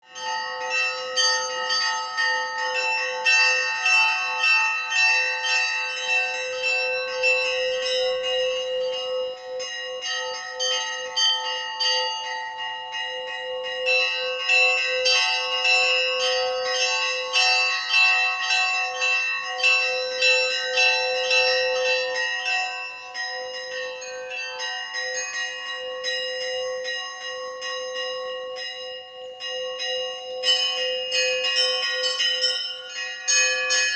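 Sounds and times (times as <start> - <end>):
church bells ringing: 0.0 - 33.9.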